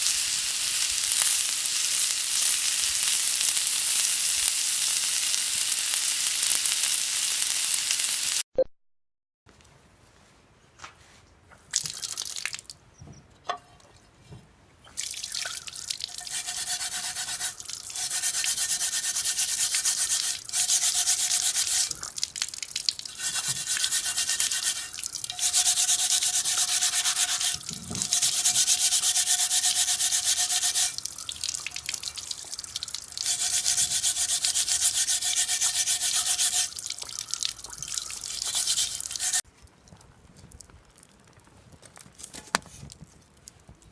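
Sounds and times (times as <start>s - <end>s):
scrubbing iron griddle plate: 16.1s - 22.1s, 23.1s - 31.0s, 33.2s - 36.9s, 38.0s - 39.4s.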